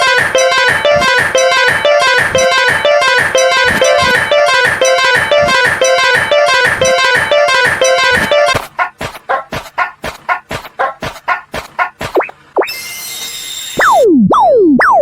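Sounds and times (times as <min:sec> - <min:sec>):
background music with steady beat: 0:00.0 - 0:08.6.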